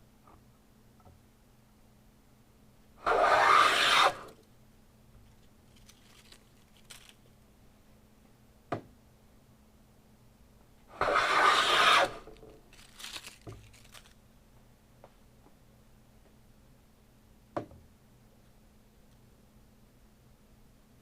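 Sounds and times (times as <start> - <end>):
hand plane cutting wood: 3.0 - 4.3, 11.0 - 12.4.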